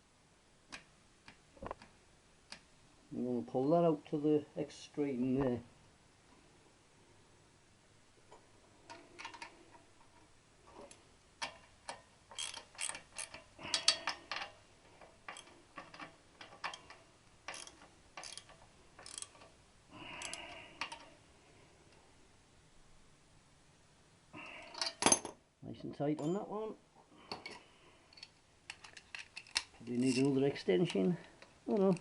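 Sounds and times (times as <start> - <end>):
socket ratchet clicking: 11.4 - 14.5, 15.3 - 19.5.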